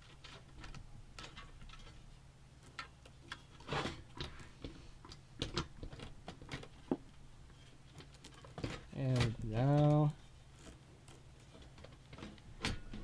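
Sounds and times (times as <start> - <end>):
hands clicking and rustling parts: 0.0 - 13.0
low steady hum: 0.0 - 13.0.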